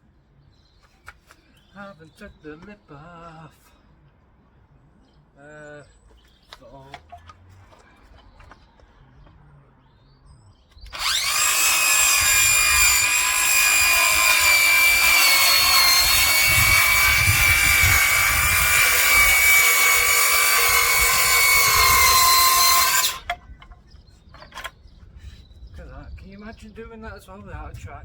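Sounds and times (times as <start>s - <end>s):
circular saw cutting timber: 10.9s - 23.4s.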